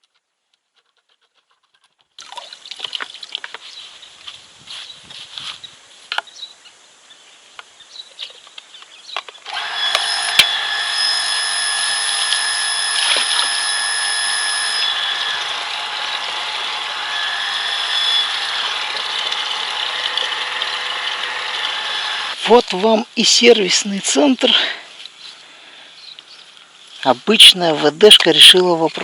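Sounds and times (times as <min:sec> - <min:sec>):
water pump motor humming and whining: 0:09.5 - 0:22.4.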